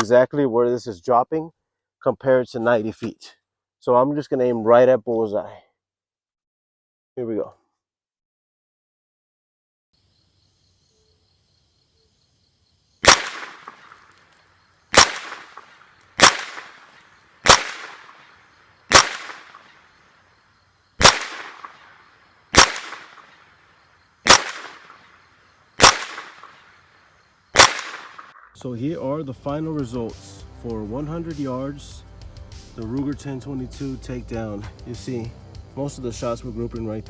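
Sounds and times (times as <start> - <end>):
rifle shots: 13.0 - 14.0, 14.9 - 18.3, 18.9 - 19.8, 21.0 - 21.9, 22.5 - 23.4, 24.2 - 25.1, 25.8 - 26.6, 27.6 - 28.4.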